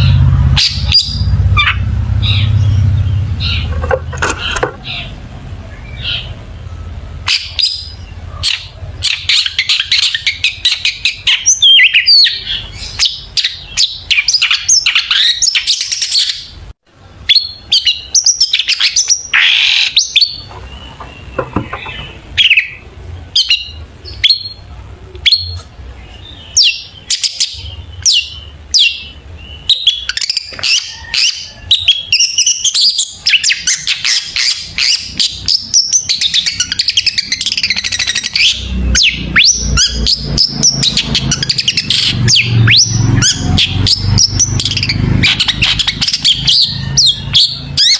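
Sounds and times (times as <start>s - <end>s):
steady low hum: 0.0s - 9.6s
bird singing chirps and trills: 0.0s - 16.6s, 17.2s - 47.9s.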